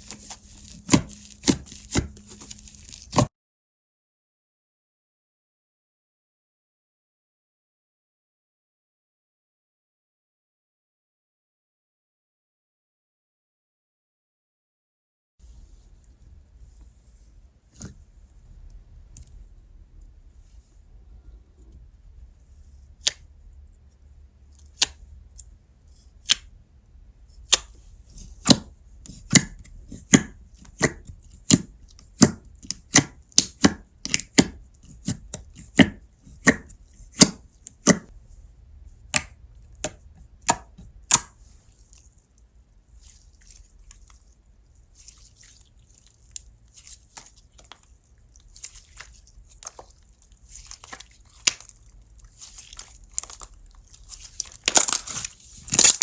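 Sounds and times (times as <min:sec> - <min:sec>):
slime crackling and crinkling: 0:00.0 - 0:03.3, 0:41.0 - 0:56.0
slime popping: 0:48.4 - 0:56.0.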